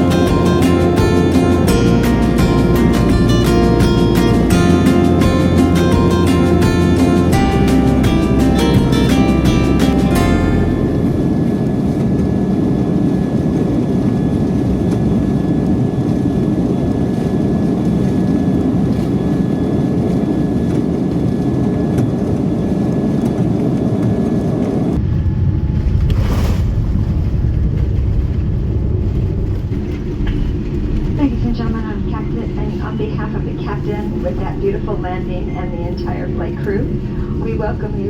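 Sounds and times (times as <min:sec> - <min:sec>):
airliner cabin engine rumble: 0:00.0 - 0:38.0
brief rushing sound: 0:25.0 - 0:30.8.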